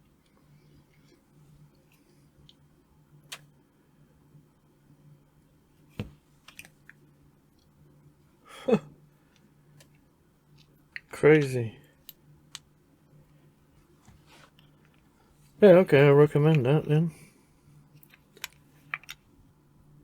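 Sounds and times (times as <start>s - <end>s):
faint steady hum: 0.0s - 20.0s
person murmuring: 8.5s - 8.9s.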